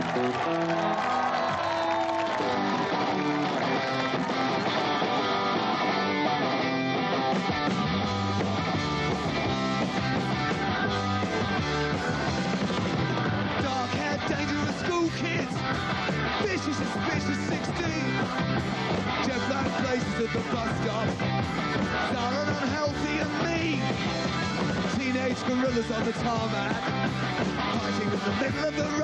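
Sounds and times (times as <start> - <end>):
rock band playing: 0.0 - 29.0.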